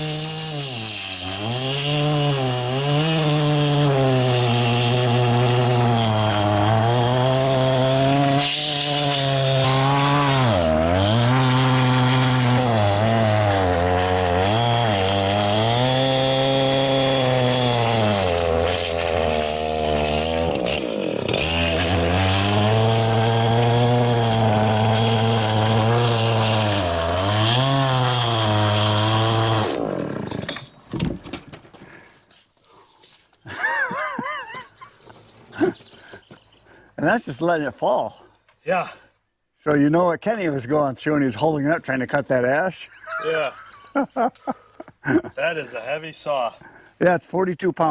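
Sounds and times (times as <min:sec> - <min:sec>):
chainsaw cutting through log: 0:00.0 - 0:36.2.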